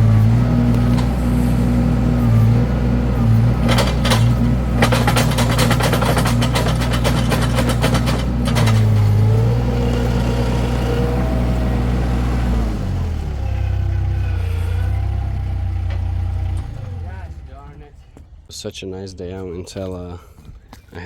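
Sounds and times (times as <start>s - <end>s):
skid steer engine running: 0.0s - 18.4s
rattling clattering clicks: 3.6s - 9.3s.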